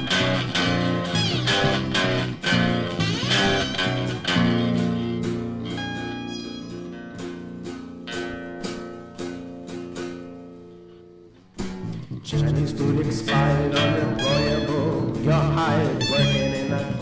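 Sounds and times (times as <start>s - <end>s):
blues guitar playing: 0.0s - 17.0s.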